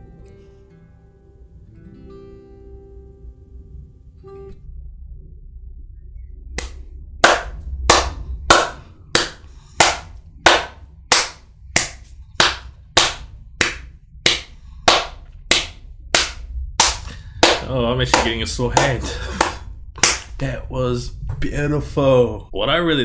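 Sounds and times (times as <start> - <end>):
person clapping hands slowly: 6.6 - 20.4.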